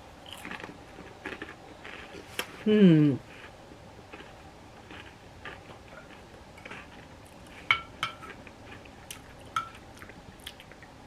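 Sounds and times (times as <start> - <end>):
dishes and utensils clinking: 7.6 - 8.4, 9.5 - 9.8.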